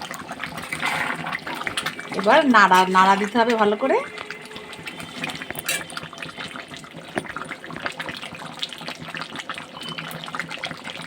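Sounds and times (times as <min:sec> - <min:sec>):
curry sizzling in a pan: 0:00.0 - 0:11.0
spoon scraping a pan: 0:00.5 - 0:06.3.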